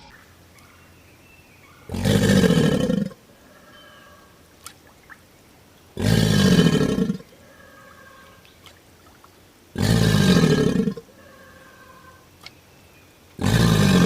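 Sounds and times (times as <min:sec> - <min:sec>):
crocodile bellowing: 0:01.7 - 0:04.5, 0:06.0 - 0:08.5, 0:09.7 - 0:12.4, 0:13.4 - 0:14.0.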